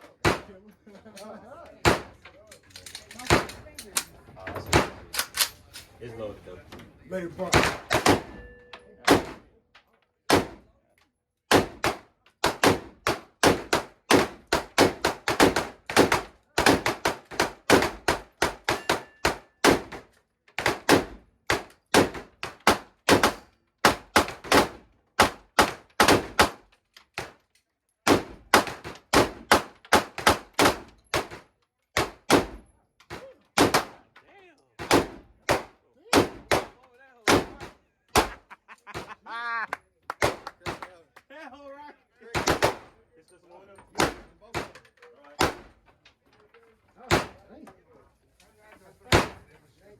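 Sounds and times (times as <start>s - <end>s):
gunshots: 0.1s - 0.5s, 1.8s - 2.2s, 4.7s - 5.5s, 7.4s - 9.5s, 10.3s - 10.7s, 11.5s - 27.4s, 28.0s - 31.4s, 32.0s - 34.1s, 34.8s - 39.2s, 40.2s - 40.9s, 42.3s - 43.0s, 43.9s - 44.8s, 45.4s - 45.8s, 47.0s - 47.4s, 49.1s - 49.5s.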